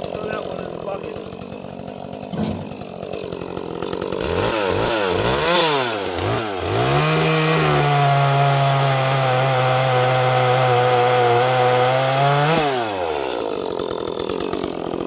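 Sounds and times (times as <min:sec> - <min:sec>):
chainsaw cutting wood: 0:00.0 - 0:15.0.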